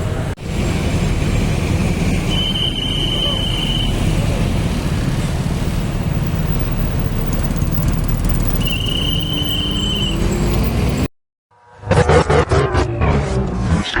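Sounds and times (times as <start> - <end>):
heavy vehicle engine rumbling: 0.0 - 11.1
road traffic: 0.0 - 14.0
high steady squeal: 1.1 - 4.4, 5.7 - 11.8.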